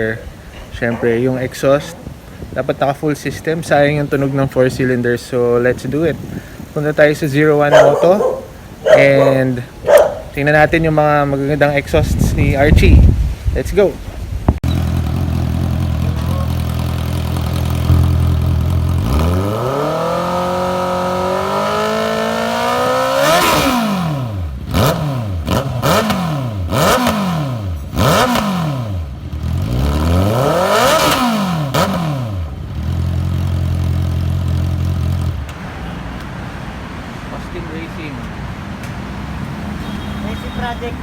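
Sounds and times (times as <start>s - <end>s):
motorcycle engine revving: 7.7s - 10.5s, 14.6s - 35.6s.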